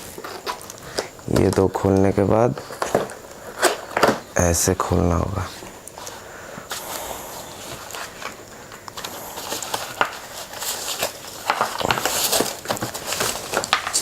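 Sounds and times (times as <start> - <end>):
cardboard packaging rustling: 0.0 - 14.0.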